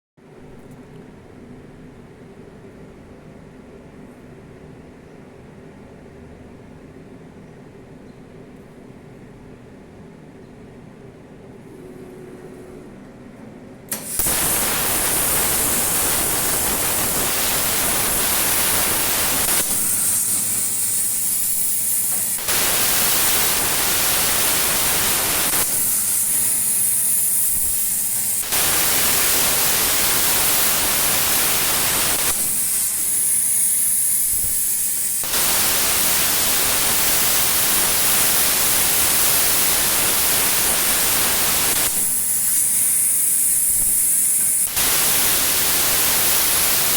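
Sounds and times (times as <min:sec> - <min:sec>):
plasma cutter hissing: 0:13.9 - 0:46.9.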